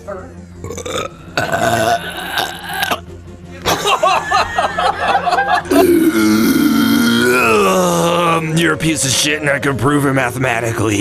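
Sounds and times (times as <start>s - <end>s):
person making trilling laugh: 5.6s - 8.0s
long low vocal sound: 5.7s - 8.4s.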